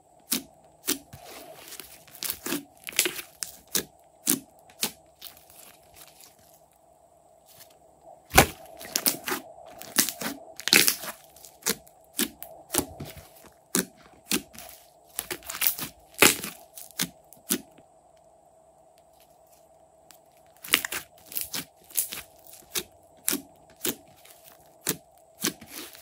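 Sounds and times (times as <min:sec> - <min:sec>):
air pockets cracking and popping: 0:00.3 - 0:06.5, 0:08.3 - 0:17.6
slime squeezed and poked: 0:08.3 - 0:17.6.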